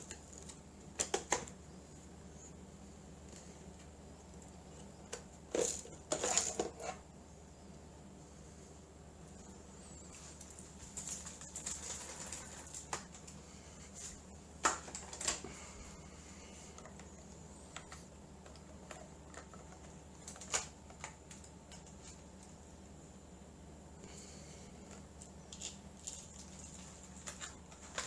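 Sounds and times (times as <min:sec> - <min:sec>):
faint hum with high tone: 0:00.0 - 0:28.0
rustling: 0:09.2 - 0:22.6.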